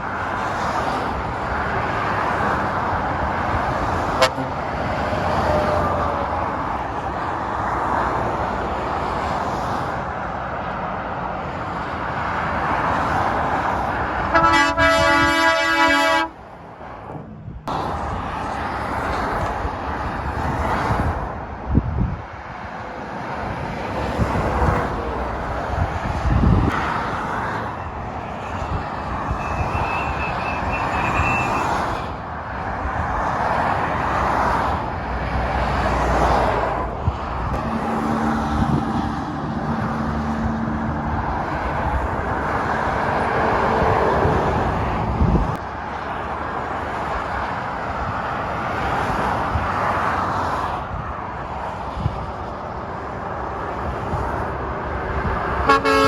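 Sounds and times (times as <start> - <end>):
traffic rushing by: 0.0 - 56.0
heavy engine drone: 37.5 - 45.5.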